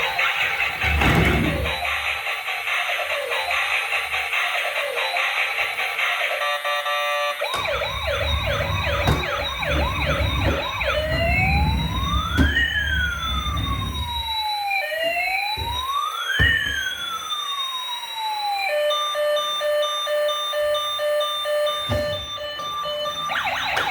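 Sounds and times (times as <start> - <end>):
siren yelping and wailing: 0.0 - 2.4, 3.1 - 23.9
music: 0.0 - 15.0.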